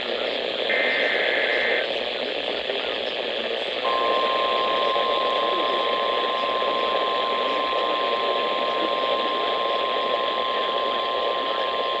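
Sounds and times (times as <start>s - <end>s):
radio static hiss: 0.0s - 12.0s
thin steady whistle: 3.9s - 12.0s.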